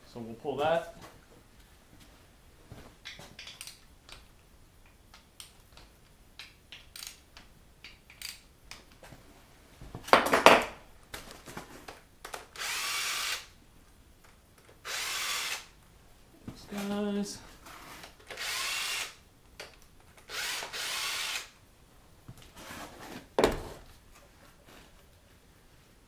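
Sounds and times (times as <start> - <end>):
cordless drill spinning: 12.5 - 13.5, 14.8 - 15.7, 18.0 - 19.2, 20.2 - 21.6.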